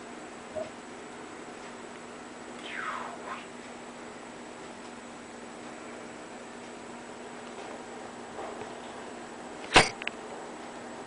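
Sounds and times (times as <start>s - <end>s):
faint hum: 0.0s - 11.0s
background hiss: 2.3s - 4.2s.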